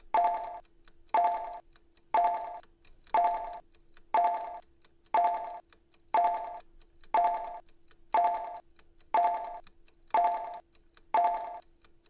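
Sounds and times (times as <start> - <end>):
electronic bell ding: 11.2 - 11.6.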